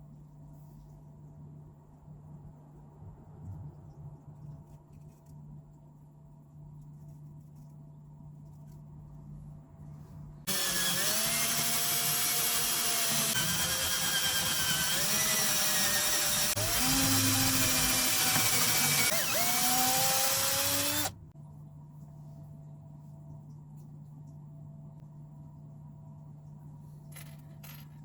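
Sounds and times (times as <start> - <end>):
electric drill running under load: 10.5 - 21.1.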